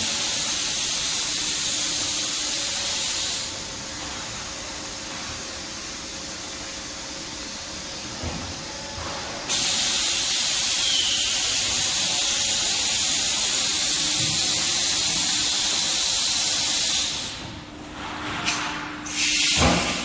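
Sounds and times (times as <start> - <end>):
compressed air hissing: 0.0 - 3.5, 9.5 - 17.4, 19.1 - 20.0.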